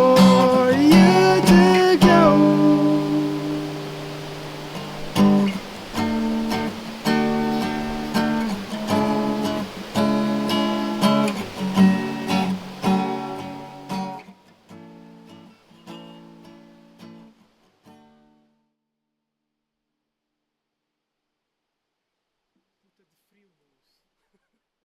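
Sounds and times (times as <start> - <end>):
acoustic guitar strumming: 0.0 - 18.5
background hiss: 0.0 - 18.5, 20.7 - 24.8.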